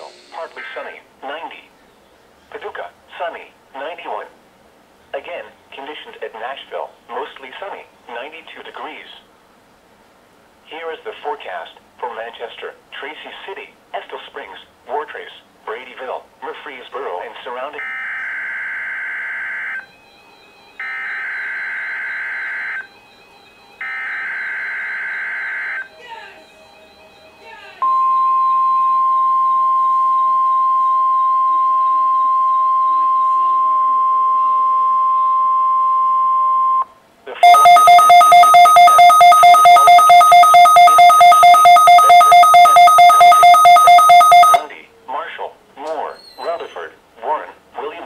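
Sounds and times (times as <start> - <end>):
steady warning alarm tone: 17.8 - 26.0, 27.8 - 44.6
two-tone electronic beeping: 27.8 - 44.7
digital data tone bursts: 37.4 - 44.6.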